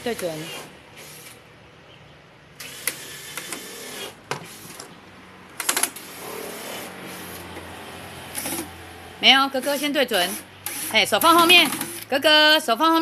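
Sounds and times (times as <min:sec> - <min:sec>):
person talking: 0:00.0 - 0:00.6, 0:09.2 - 0:13.0
electric screwdriver driving screw: 0:02.6 - 0:04.9.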